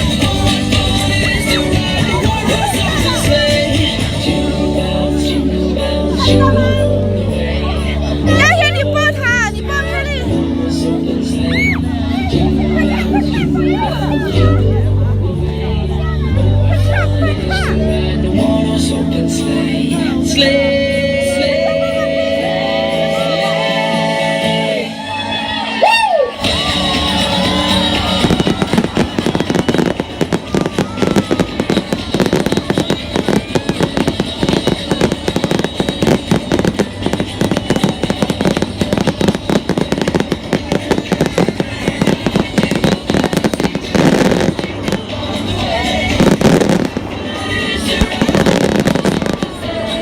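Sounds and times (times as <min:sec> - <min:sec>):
fireworks crackling and popping: 0:00.0 - 0:05.4, 0:26.4 - 0:50.0
music with long held notes: 0:00.0 - 0:50.0.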